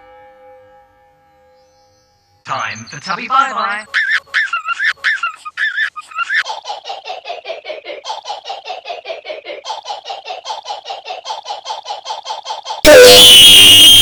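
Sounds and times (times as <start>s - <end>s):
baby giggle stutter loop: 3.4s - 14.0s.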